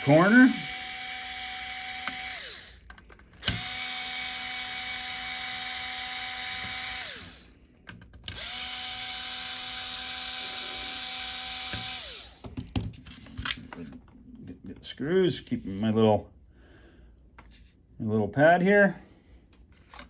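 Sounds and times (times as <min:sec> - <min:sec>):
electric screwdriver motor whine: 0:00.0 - 0:07.5, 0:08.3 - 0:12.4.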